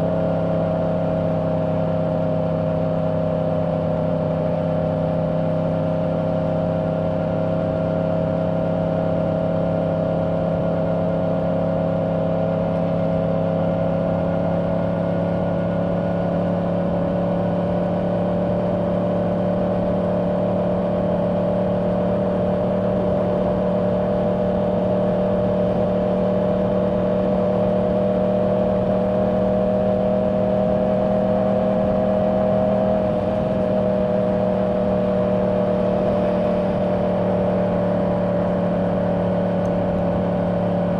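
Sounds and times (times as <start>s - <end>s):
motorcycle engine cruising: 12.5s - 40.9s.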